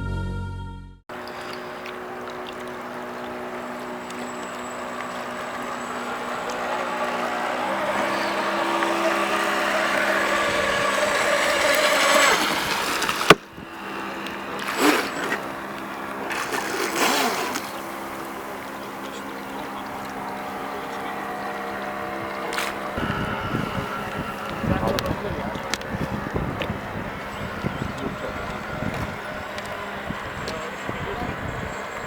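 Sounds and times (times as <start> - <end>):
electric motor whining: 1.1 - 32.0.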